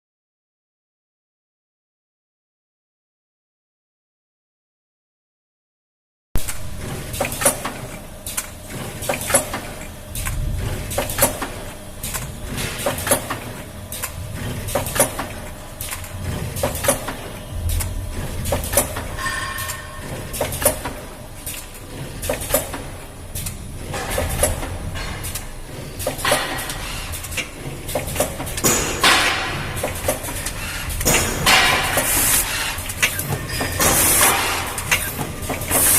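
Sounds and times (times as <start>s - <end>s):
low motor hum: 6.4s - 19.2s
mechanical clicks and knocks: 6.4s - 35.9s.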